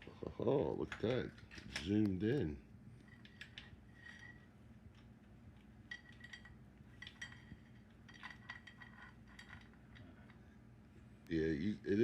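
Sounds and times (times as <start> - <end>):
low steady hum: 0.0 - 12.0
metal chain clinking and rattling: 5.9 - 10.0.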